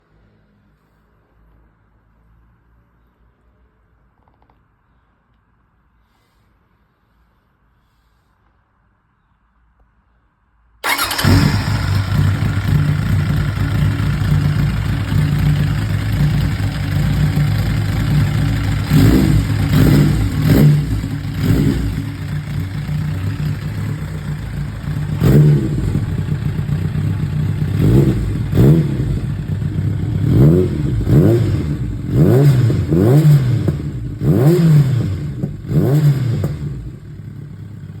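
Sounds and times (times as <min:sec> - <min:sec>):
motorcycle engine idling and revving: 0:10.8 - 0:38.0.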